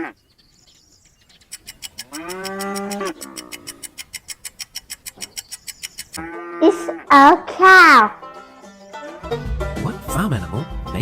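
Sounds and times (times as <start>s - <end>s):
rapid steady ticking: 1.1s - 6.2s
cow mooing: 2.0s - 3.9s, 6.2s - 7.1s.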